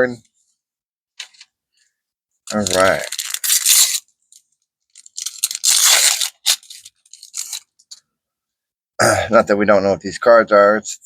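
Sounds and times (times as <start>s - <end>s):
plastic packaging crinkling: 2.5s - 7.8s.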